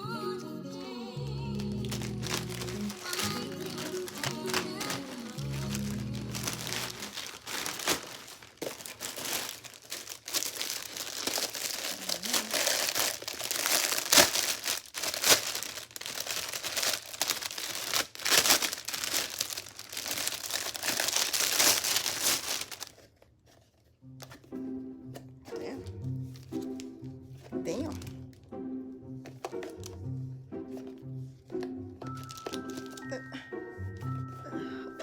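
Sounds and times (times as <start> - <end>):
packaging tearing: 1.6 - 23.2, 32.2 - 33.1
packaging crinkling and crackling: 1.6 - 24.4, 32.0 - 33.2.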